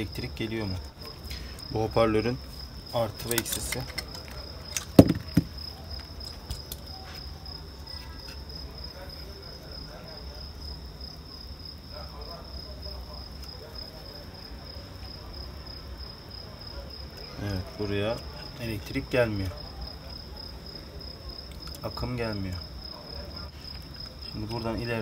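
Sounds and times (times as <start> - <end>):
cricket trilling: 0.0 - 25.0
sharp knocks: 5.0 - 5.6.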